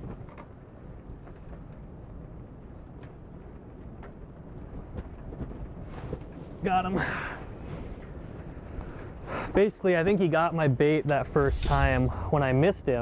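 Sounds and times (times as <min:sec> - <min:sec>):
wind rumbling: 0:11.1 - 0:13.0.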